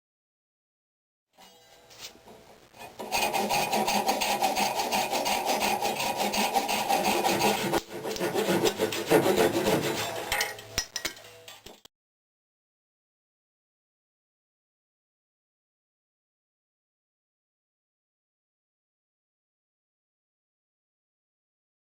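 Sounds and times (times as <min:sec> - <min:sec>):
hand file scraping knife: 0:02.8 - 0:10.4.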